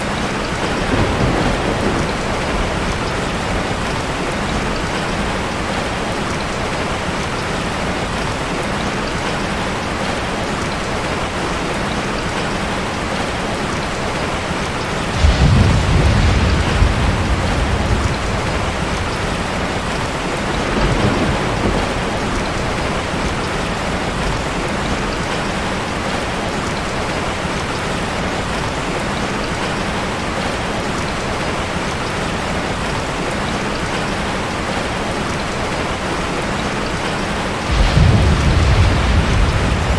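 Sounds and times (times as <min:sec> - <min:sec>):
thunder rumbling: 0:00.0 - 0:06.8, 0:14.8 - 0:26.8, 0:37.5 - 0:39.9
heavy rain falling: 0:00.0 - 0:39.9.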